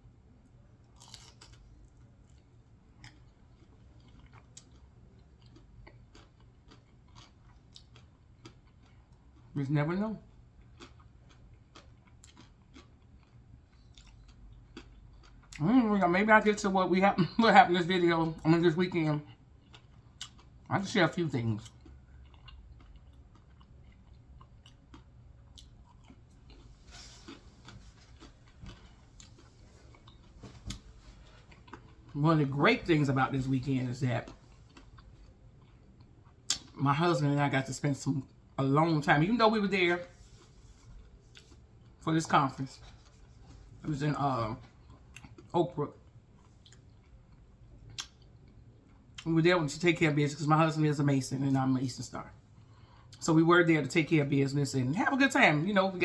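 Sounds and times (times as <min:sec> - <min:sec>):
person chewing food: 0:00.7 - 0:09.6, 0:10.2 - 0:15.7, 0:19.2 - 0:20.7, 0:21.5 - 0:33.5, 0:34.2 - 0:36.8, 0:40.0 - 0:42.0, 0:42.8 - 0:49.2
small mouth clicks: 0:47.9 - 0:48.3.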